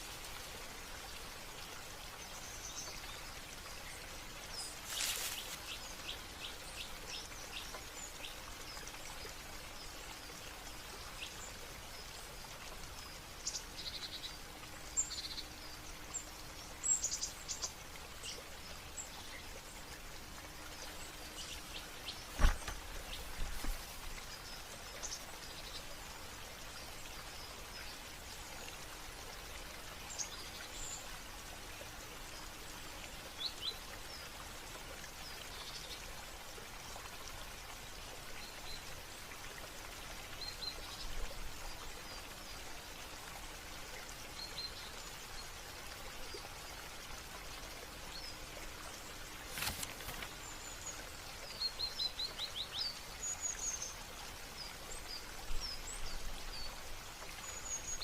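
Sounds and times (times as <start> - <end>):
falling water hissing: 4.5 - 6.5.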